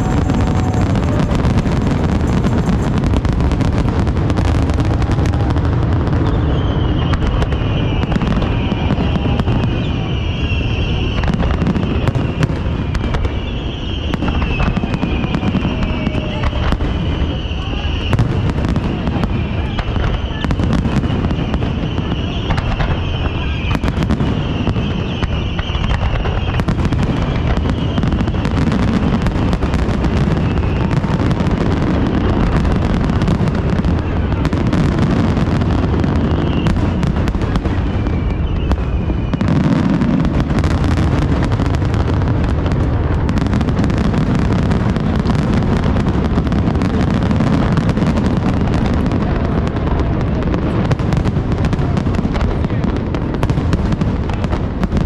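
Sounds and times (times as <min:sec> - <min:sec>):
low rumble: 0:00.0 - 0:05.4
fireworks bangs and crackles: 0:00.0 - 0:55.0
fireworks whistling: 0:00.0 - 0:55.0.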